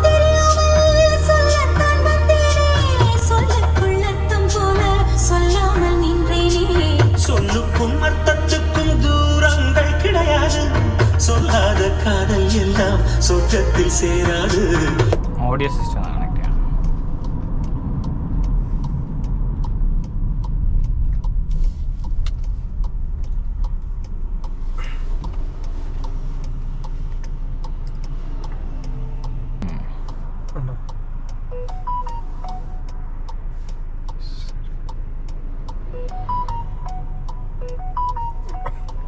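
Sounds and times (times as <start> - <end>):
engine and road rumble: 0.0 - 39.0
turn signal ticking: 0.0 - 39.0.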